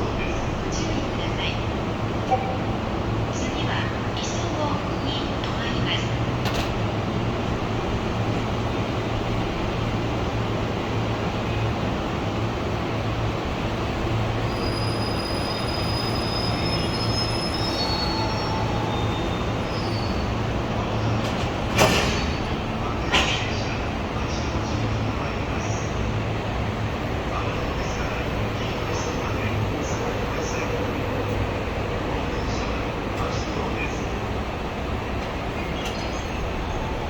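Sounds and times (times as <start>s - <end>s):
diesel locomotive and wagons rumbling: 0.0s - 37.0s
high wheel squeal: 14.4s - 20.5s.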